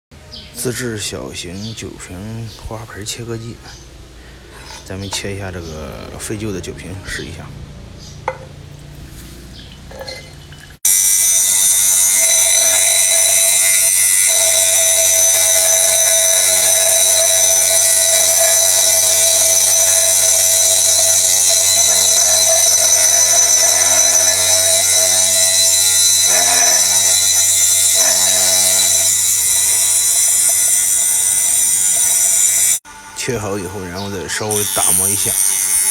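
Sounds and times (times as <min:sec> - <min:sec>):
cutting disc on glass bottle: 0:09.9 - 0:32.8, 0:33.9 - 0:35.9
electric motor whining: 0:10.9 - 0:32.8.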